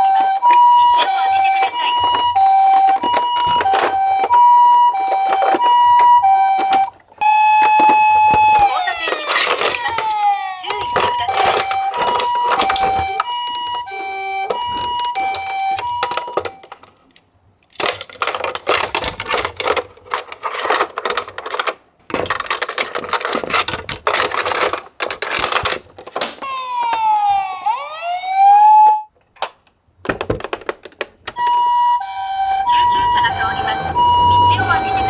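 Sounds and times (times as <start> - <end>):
toy two-tone siren: 0.0 - 16.8, 26.4 - 29.1, 31.4 - 35.0
plastic clicking and clattering: 0.0 - 27.8, 29.1 - 35.0
electronic wail: 31.4 - 35.0.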